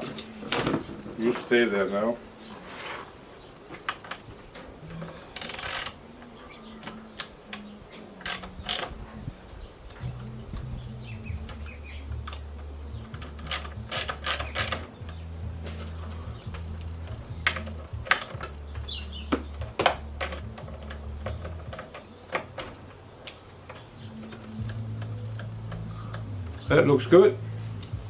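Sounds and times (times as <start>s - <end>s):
low steady hum: 6.0s - 28.0s
metallic clicks and clanks: 11.4s - 27.1s.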